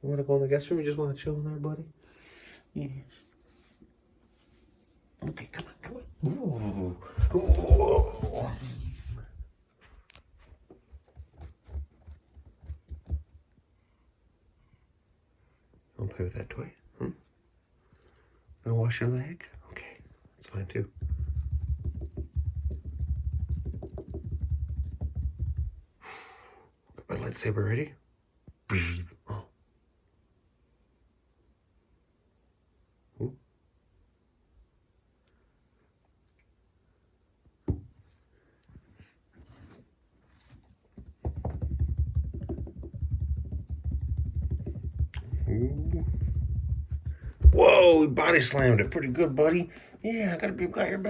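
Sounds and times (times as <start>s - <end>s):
rattling scuffle: 10.8s - 13.6s, 20.5s - 25.8s, 38.0s - 49.7s
cat scuffing with toy: 37.6s - 47.6s.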